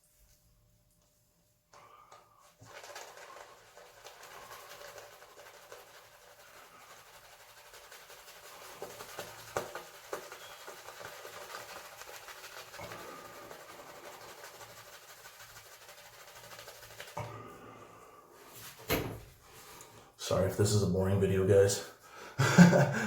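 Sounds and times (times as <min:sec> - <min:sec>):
shaving brush whisking lather: 0:01.0 - 0:18.9.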